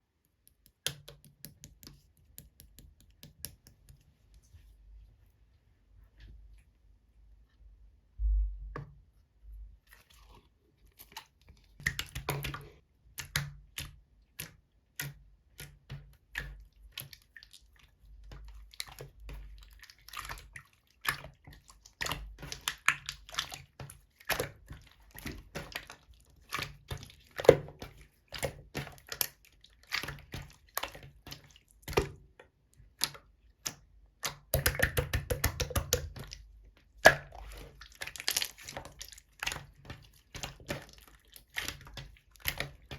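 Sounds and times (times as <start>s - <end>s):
slime squished with sticky pops: 32.9s - 42.9s.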